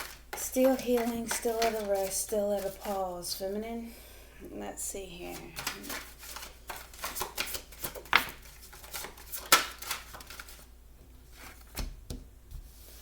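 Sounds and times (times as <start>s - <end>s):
cards slapping: 0.0s - 2.8s, 5.6s - 10.6s
cards shuffling: 0.0s - 3.0s, 5.3s - 10.7s.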